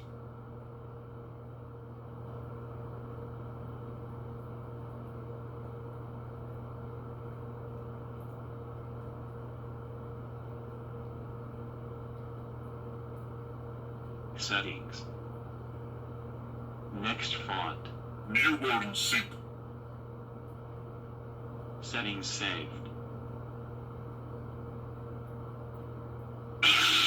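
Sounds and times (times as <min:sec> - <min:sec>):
lightsaber idle hum: 0:26.6 - 0:27.0.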